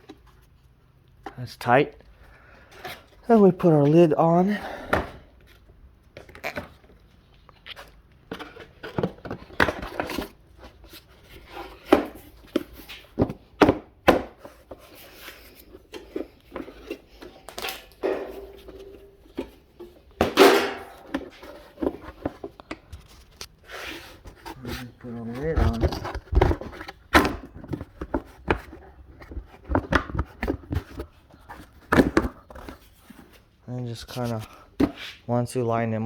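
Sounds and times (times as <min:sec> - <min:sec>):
knocks clicks and scraping of cover: 0:06.1 - 0:33.4.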